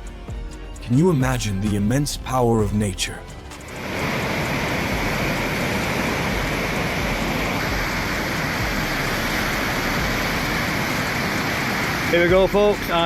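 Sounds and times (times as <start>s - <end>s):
flooded river rushing: 3.7s - 13.0s.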